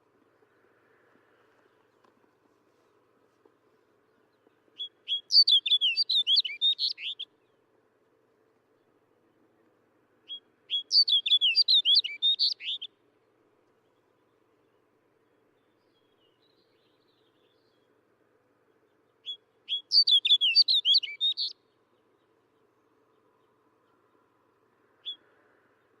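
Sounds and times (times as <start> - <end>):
bird singing: 4.1 - 7.7, 8.8 - 13.0, 13.8 - 18.0, 18.6 - 26.0.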